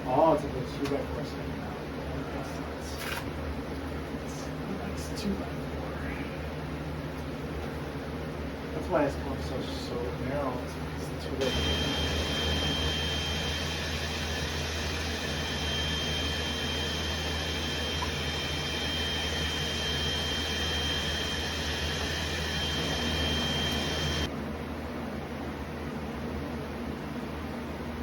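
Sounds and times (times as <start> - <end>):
machine drone with high whine: 8.8 - 24.6.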